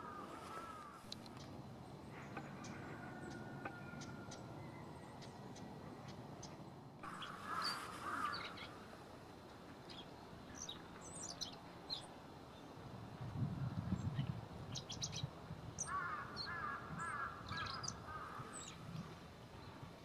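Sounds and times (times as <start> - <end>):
rough bird calls: 0.0 - 8.8.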